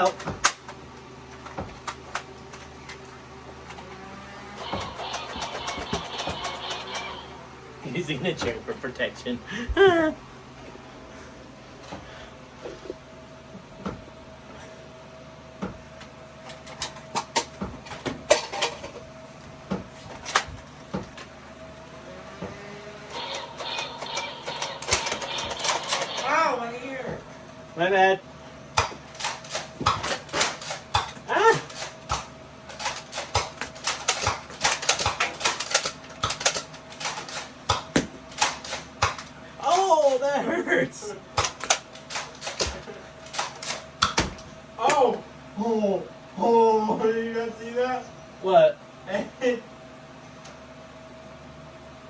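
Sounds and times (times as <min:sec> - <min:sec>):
toy blaster clicks and knocks: 0:04.6 - 0:07.2, 0:23.2 - 0:26.4, 0:28.8 - 0:39.3, 0:41.4 - 0:44.3.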